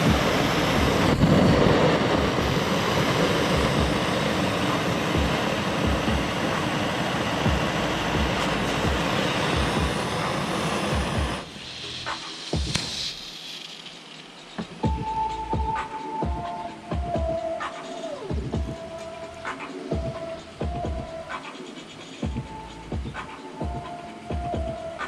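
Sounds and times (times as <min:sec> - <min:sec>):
vehicle running: 0:00.0 - 0:12.8.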